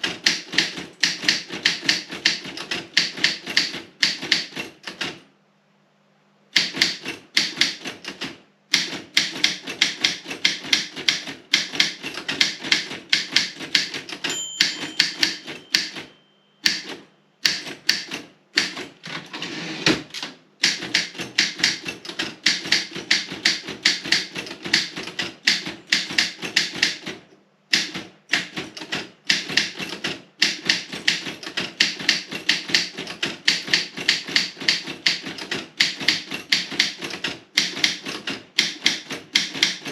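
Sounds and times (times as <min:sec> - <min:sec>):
typewriter keys striking: 0:00.0 - 0:05.2, 0:06.6 - 0:19.3, 0:19.9 - 0:39.9.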